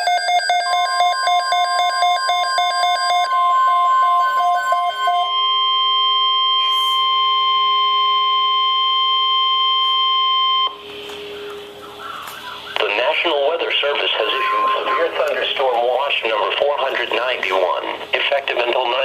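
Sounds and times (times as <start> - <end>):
rapid beeping: 0.0 - 19.0
steady alarm tone: 0.0 - 19.0
radio hiss: 12.3 - 19.0.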